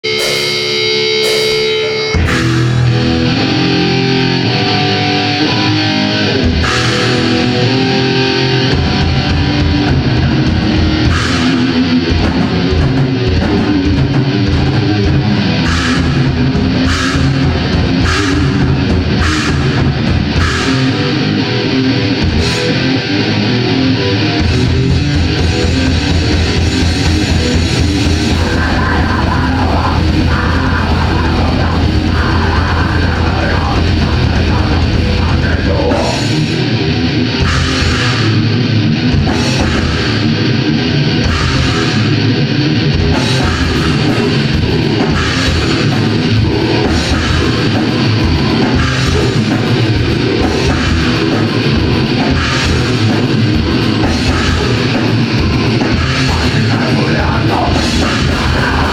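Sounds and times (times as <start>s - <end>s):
cymbal crashes: 0.0s - 3.6s
death metal band playing: 0.0s - 58.9s
fast bass drum pattern: 8.7s - 21.1s, 24.4s - 36.5s, 42.9s - 58.9s.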